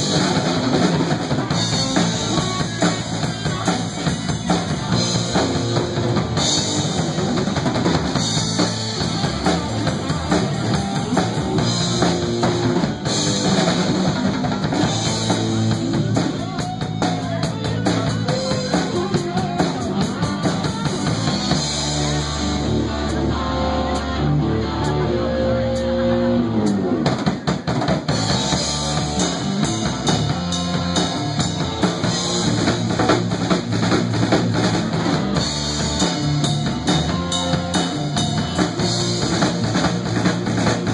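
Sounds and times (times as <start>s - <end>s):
live rock band playing: 0.0s - 40.9s.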